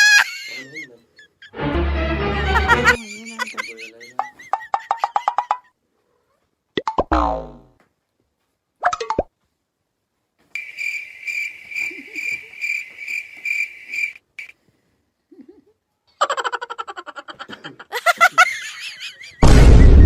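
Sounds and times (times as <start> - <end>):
loud noisy crash: 19.4 - 20.0.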